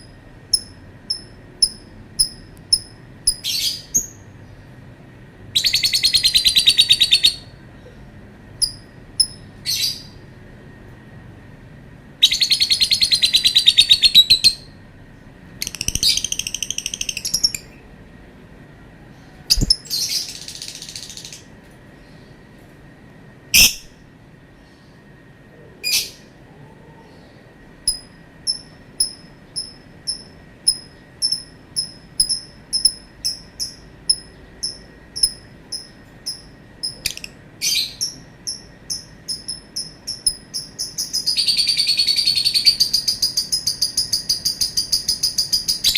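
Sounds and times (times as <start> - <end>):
bird chattering trills: 0.0 - 4.3, 5.6 - 7.6, 12.2 - 14.8, 15.6 - 17.9, 19.5 - 21.5, 23.6 - 23.9, 27.9 - 45.9.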